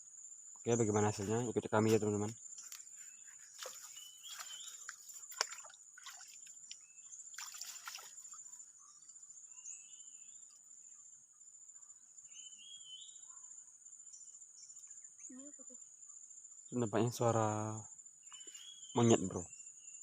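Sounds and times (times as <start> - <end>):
water splashing: 3.6 - 8.5.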